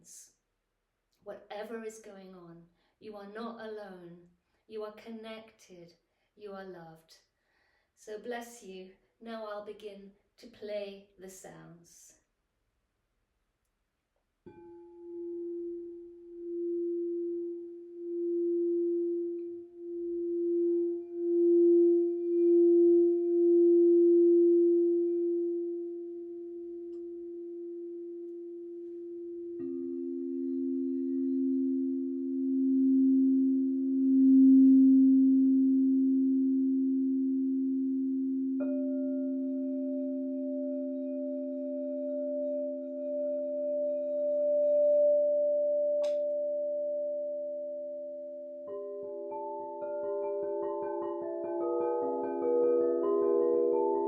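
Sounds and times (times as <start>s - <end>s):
crystal singing bowls ringing: 14.5s - 54.0s.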